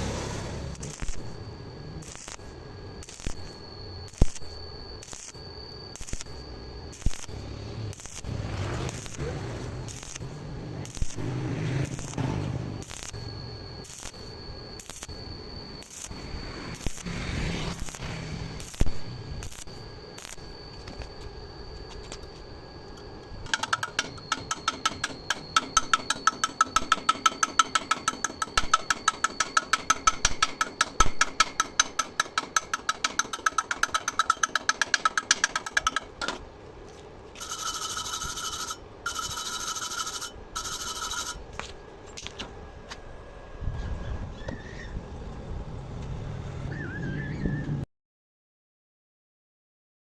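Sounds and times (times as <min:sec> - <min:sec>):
steady high tone: 0:22.0 - 0:36.5, 0:37.3 - 0:41.5
harsh grinding: 0:23.0 - 0:41.4
metal rasping strokes: 0:23.0 - 0:41.4.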